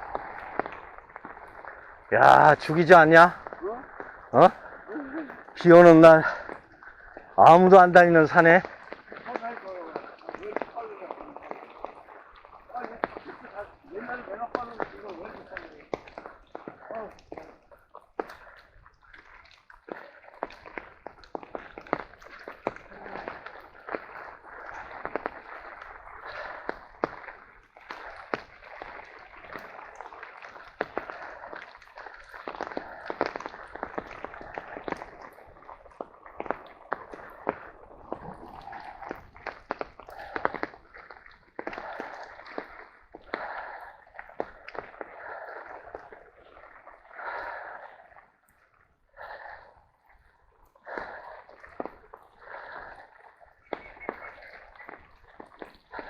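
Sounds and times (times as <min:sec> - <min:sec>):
light rain falling: 0:00.0 - 0:47.8, 0:48.4 - 0:56.0
person breathing heavily: 0:41.7 - 0:46.2, 0:47.1 - 0:48.1, 0:49.1 - 0:49.9, 0:50.8 - 0:53.4.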